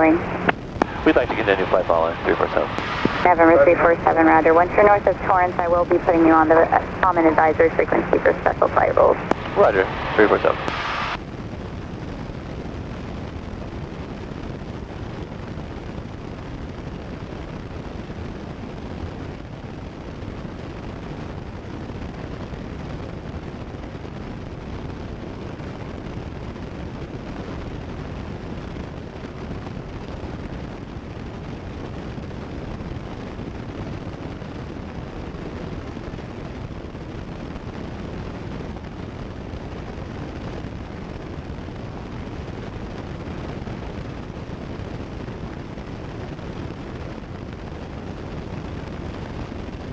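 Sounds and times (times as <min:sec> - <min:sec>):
light aircraft cabin drone: 0:00.0 - 0:11.2.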